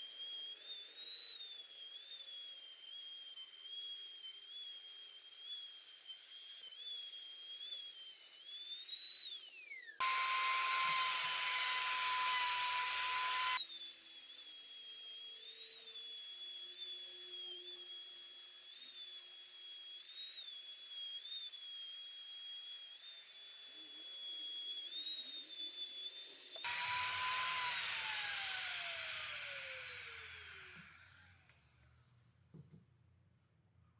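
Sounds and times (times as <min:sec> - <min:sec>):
small power tool motor whining: 0:00.0 - 0:32.5.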